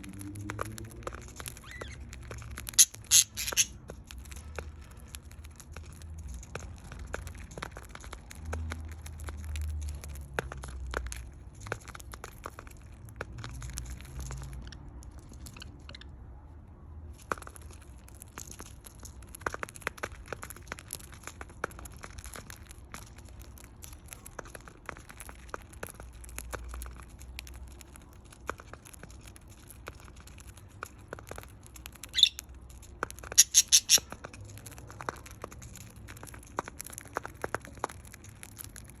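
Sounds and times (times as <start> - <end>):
budgerigars cracking seed: 0.0 - 16.1, 17.2 - 39.0
budgerigar squawking chirps: 2.8 - 3.7, 32.2 - 32.4, 33.4 - 34.0.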